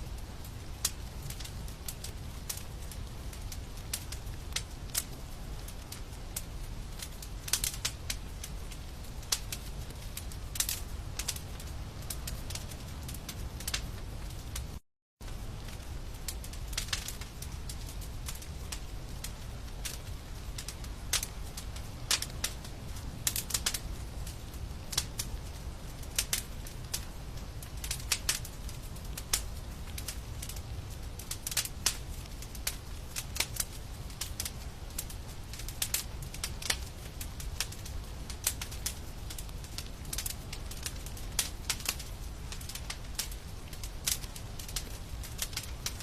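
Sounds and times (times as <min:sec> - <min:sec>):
wood fire crackling: 0:00.0 - 0:46.0.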